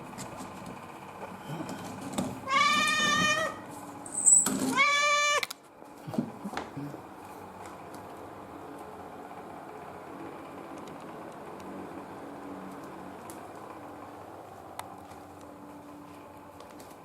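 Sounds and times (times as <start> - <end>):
cat meowing: 2.5 - 3.7, 4.7 - 5.5.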